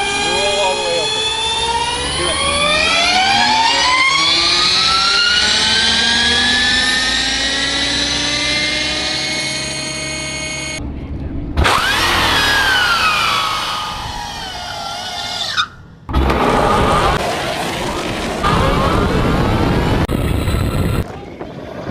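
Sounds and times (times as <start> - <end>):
electric motorcycle motor whining: 0.0 - 10.8, 11.6 - 17.2.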